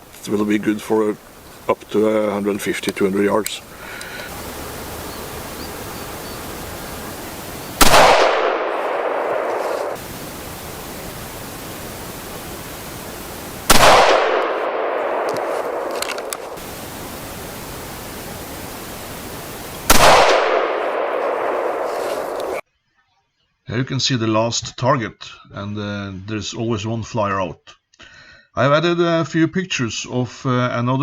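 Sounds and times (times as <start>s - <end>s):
rifle shots: 7.7s - 10.3s, 13.6s - 16.7s, 19.9s - 22.6s.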